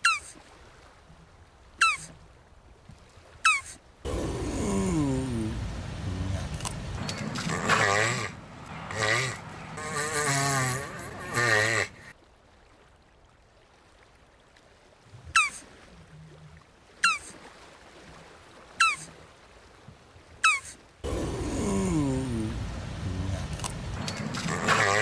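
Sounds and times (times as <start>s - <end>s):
tortoise bleat-like call: 3.5s - 12.1s, 20.4s - 25.0s.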